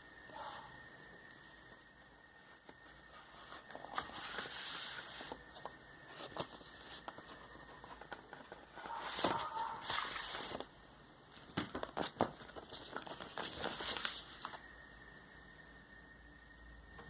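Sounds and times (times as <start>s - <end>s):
plastic and paper sleeves crinkling: 3.1s - 10.7s, 11.4s - 14.6s.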